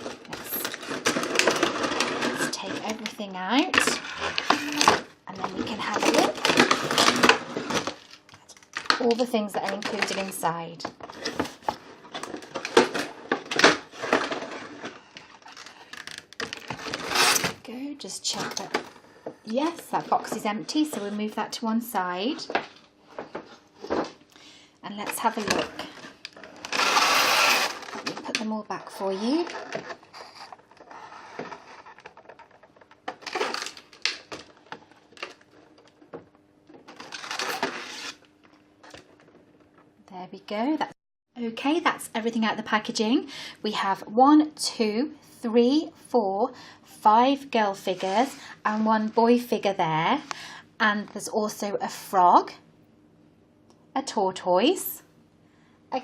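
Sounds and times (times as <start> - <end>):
plastic packaging rustling: 0.0 - 17.6, 25.1 - 39.8.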